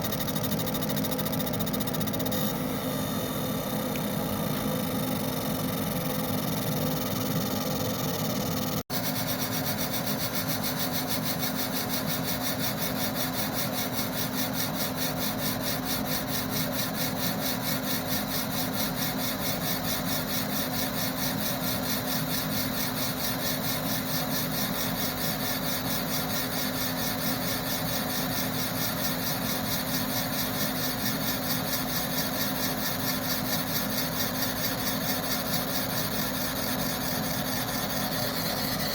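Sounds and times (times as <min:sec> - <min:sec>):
machine hum and hiss: 0:00.0 - 0:38.9.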